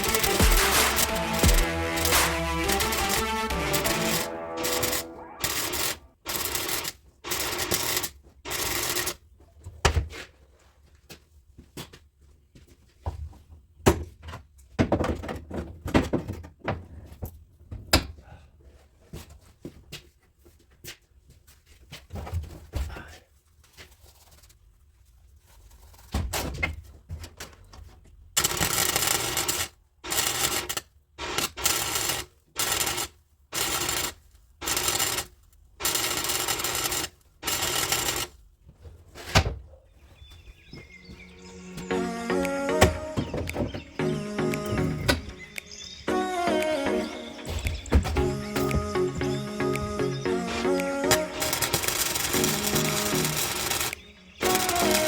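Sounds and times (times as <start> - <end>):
welder bursts: 0.0 - 6.7, 48.3 - 55.0.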